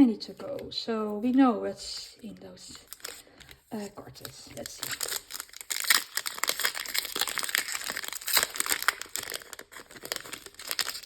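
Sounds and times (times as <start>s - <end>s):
foil wrapper crackling: 2.8s - 11.0s.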